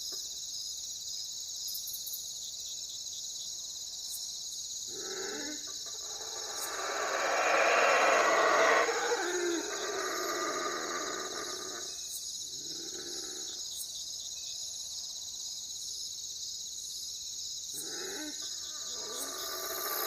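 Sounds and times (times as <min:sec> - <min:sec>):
owl hooting: 0:04.9 - 0:11.9.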